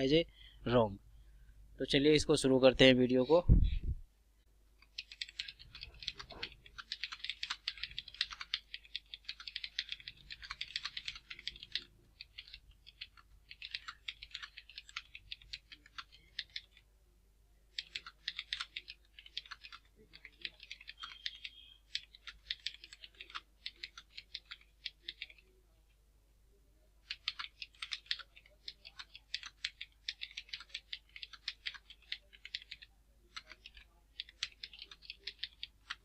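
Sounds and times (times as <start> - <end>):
typing on computer keyboard: 4.8 - 16.8, 17.7 - 25.6, 27.0 - 36.0.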